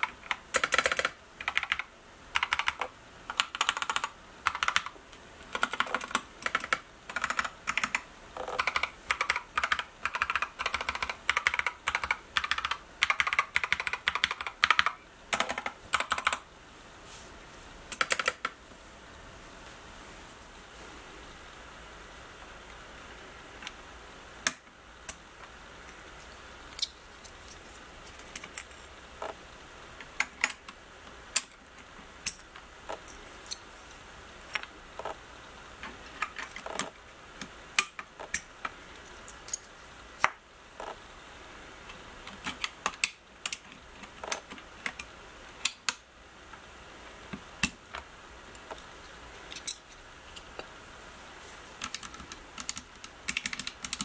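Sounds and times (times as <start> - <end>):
mechanical keyboard keys clacking: 0.0 - 4.9, 5.5 - 16.4, 17.9 - 18.5, 51.8 - 54.0.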